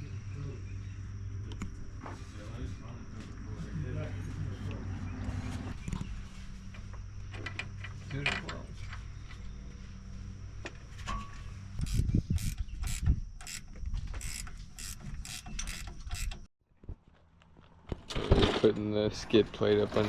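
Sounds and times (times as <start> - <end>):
steady low hum: 0.0 - 16.5
ratchet wrench clicking: 11.8 - 16.5.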